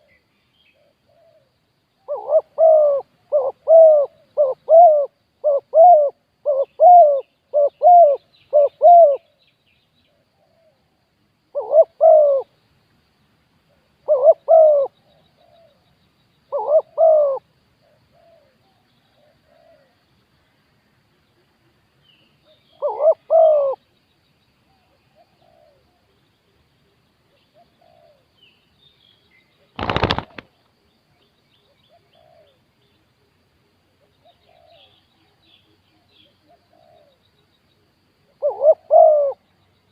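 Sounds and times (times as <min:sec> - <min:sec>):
dove cooing: 0:00.8 - 0:09.3, 0:11.5 - 0:12.5, 0:14.0 - 0:15.8, 0:16.5 - 0:20.0, 0:22.4 - 0:23.8, 0:24.7 - 0:26.1, 0:26.8 - 0:28.4, 0:31.7 - 0:32.6, 0:34.0 - 0:37.3, 0:38.2 - 0:39.4.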